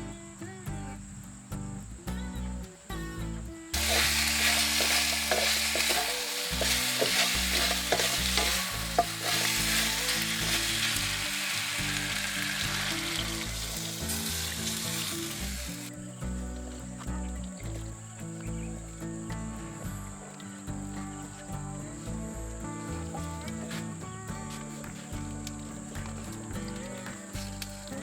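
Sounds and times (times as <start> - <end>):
utensil scraping a pan: 3.8 - 13.0
food sizzling in a pan: 3.8 - 15.9.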